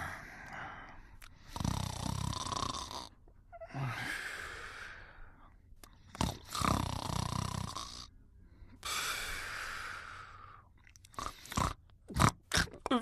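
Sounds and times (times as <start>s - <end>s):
animal snoring: 1.4s - 3.2s, 6.1s - 8.1s, 11.2s - 12.7s.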